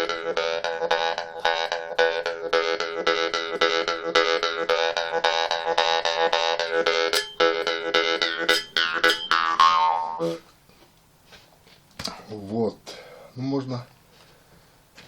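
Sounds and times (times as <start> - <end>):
jaw harp twanging: 0.0 - 10.4.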